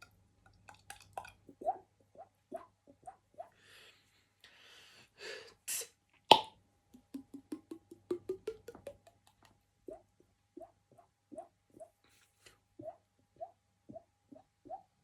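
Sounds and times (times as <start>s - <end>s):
hissy breaths: 3.6s - 5.9s
mouth click: 5.7s - 9.6s
hollow mouth plops: 6.3s - 10.0s.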